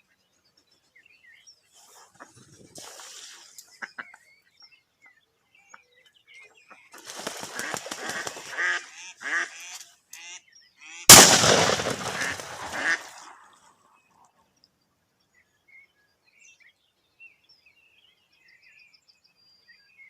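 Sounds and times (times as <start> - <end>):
duck quacking: 7.5 - 11.2, 12.0 - 13.2.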